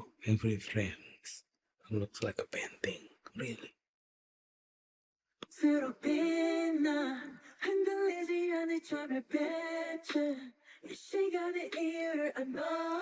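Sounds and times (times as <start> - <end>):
pop ballad: 5.5 - 13.0.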